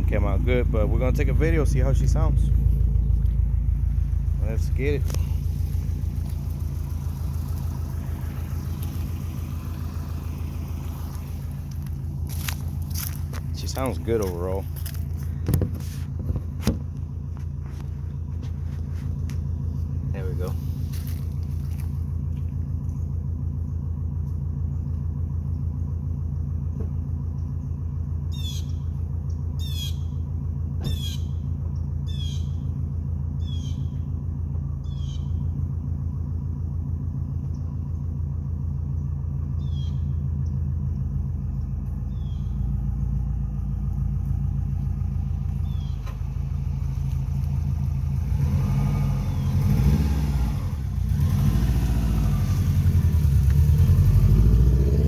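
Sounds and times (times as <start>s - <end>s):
car engine idling and revving: 0.0s - 55.0s
bird chirping: 34.8s - 35.5s, 42.1s - 42.7s, 45.6s - 46.2s.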